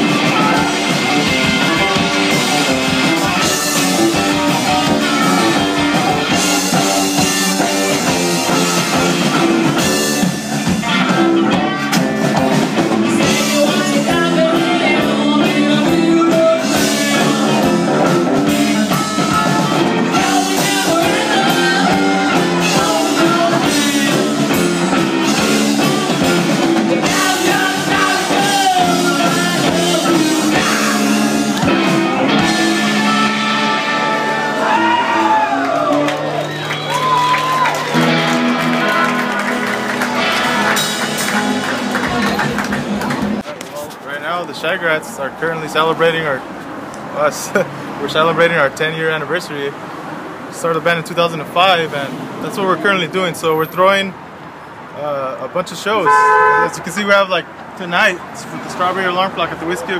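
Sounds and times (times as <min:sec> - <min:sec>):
drum kit: 0:00.0 - 0:36.1, 0:37.9 - 0:43.5
guitar: 0:00.0 - 0:59.9
person singing: 0:13.0 - 0:31.5.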